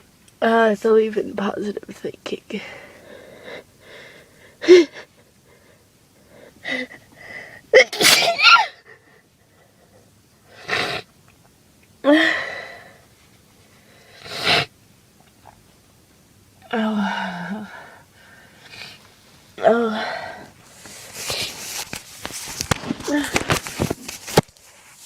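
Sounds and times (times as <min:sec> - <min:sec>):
woman breathing: 0:02.5 - 0:07.7, 0:12.0 - 0:14.4, 0:16.7 - 0:19.1, 0:19.7 - 0:21.6
woman sneezing: 0:07.8 - 0:08.8.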